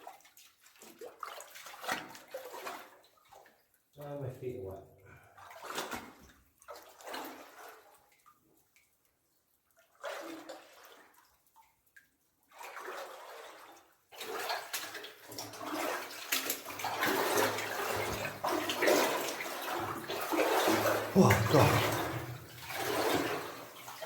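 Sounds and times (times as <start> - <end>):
boots sloshing through water: 0.0 - 3.4, 12.5 - 24.0.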